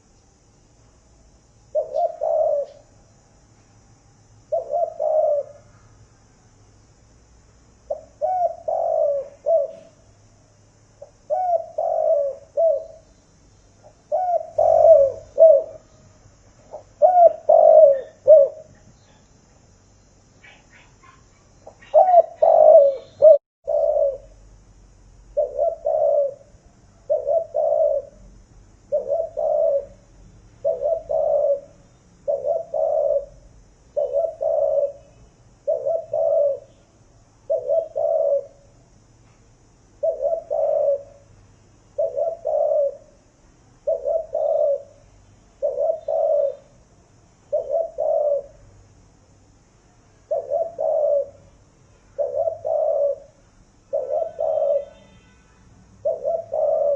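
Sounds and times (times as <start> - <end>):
doves cooing: 1.8 - 2.8, 4.5 - 5.7, 7.9 - 10.0, 11.0 - 13.0, 14.0 - 16.0, 16.7 - 18.8, 20.4 - 24.4, 25.4 - 26.5, 27.1 - 28.2, 28.9 - 35.1, 35.7 - 36.7, 37.5 - 38.7, 40.0 - 41.2, 42.0 - 43.2, 43.8 - 45.0, 45.6 - 46.7, 47.5 - 48.6, 50.3 - 51.4, 52.2 - 55.0, 56.0 - 56.9.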